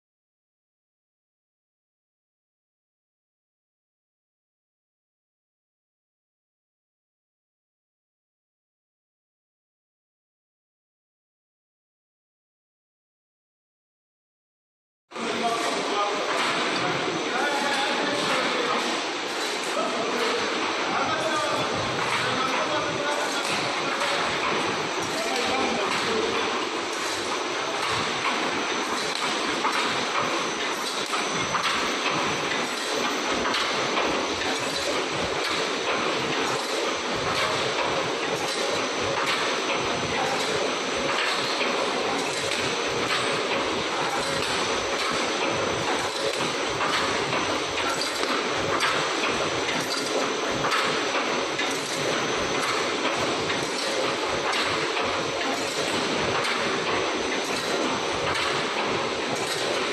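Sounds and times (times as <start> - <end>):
welding machinery clattering: 15.3 - 59.9.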